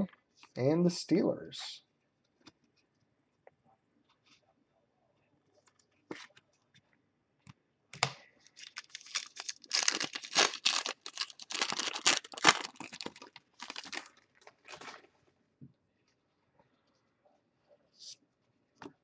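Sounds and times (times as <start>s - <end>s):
card wrapper tearing and crinkling: 8.6s - 15.0s.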